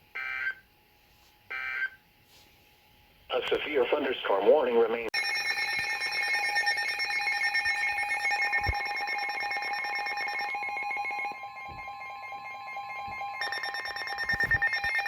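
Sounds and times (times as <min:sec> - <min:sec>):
electronic alarm with rapid pulsing: 0:01.5 - 0:02.0, 0:05.2 - 0:15.0.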